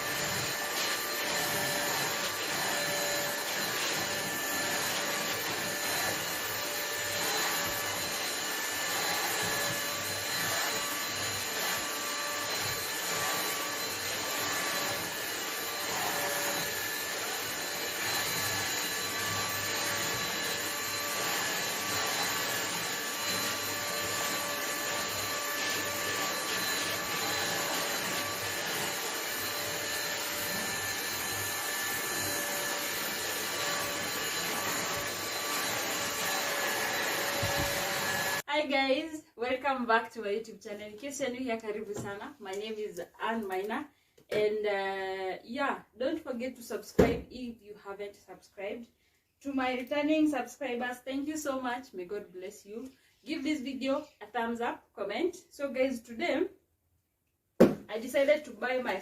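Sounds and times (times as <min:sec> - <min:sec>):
vacuum cleaner running: 0:00.0 - 0:38.5.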